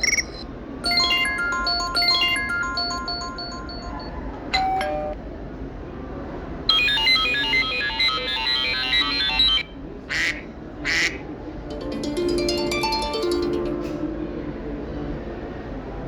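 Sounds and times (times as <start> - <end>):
fast run of high notes: 0.8 - 4.1
falling two-note chime: 0.8 - 5.2, 11.7 - 15.8
phone ringtones: 0.8 - 5.2.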